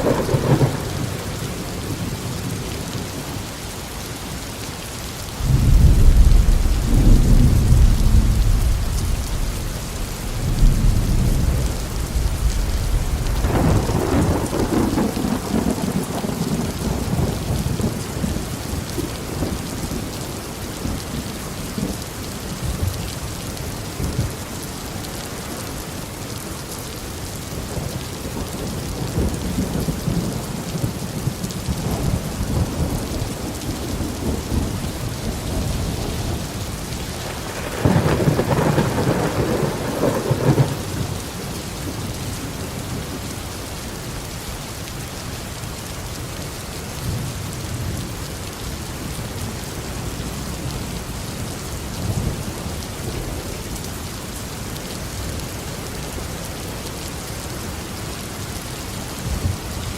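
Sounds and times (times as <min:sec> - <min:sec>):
thunder rumbling: 0:00.0 - 0:03.0, 0:05.4 - 0:19.7, 0:28.3 - 0:43.0
steady rain falling: 0:00.0 - 0:59.9.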